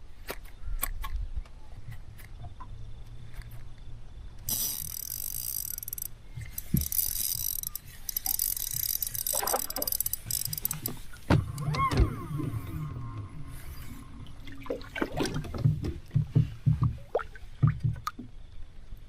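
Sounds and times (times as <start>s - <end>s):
rod and reel knocks: 4.5s - 11.5s
fishing reel whirring: 4.5s - 14.2s.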